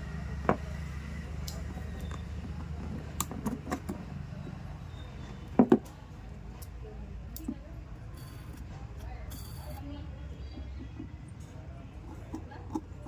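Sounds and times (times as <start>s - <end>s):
metal parts and tools clicking: 8.2s - 9.8s.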